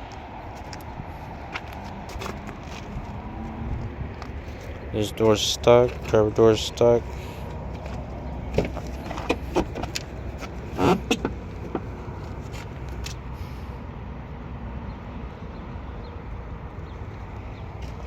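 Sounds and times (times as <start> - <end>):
car door handle and latch clunking: 8.5 - 12.1.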